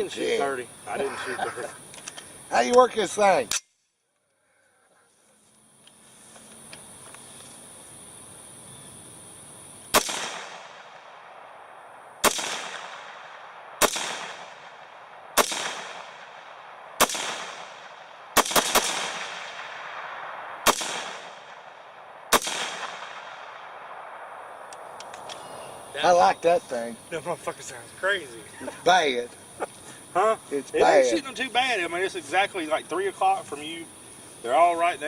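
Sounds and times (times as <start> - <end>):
rifle shots echoing: 9.9 - 11.4, 12.2 - 24.6.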